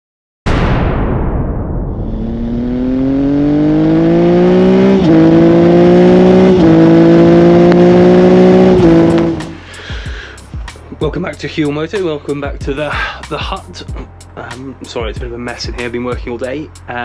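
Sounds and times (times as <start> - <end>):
vehicle engine accelerating: 2.0 - 9.7.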